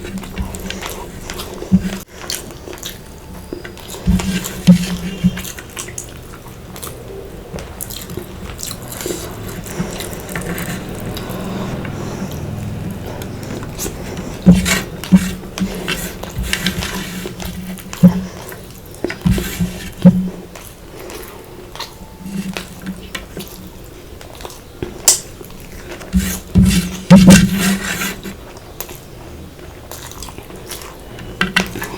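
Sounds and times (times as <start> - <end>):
chewing: 0.0 - 27.1, 28.2 - 31.9.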